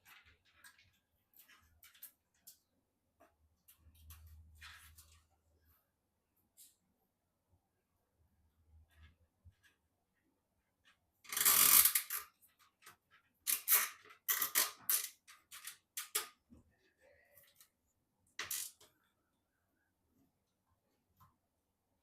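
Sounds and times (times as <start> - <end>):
computer parts rustling and clinking: 0.0 - 5.5, 10.8 - 16.5.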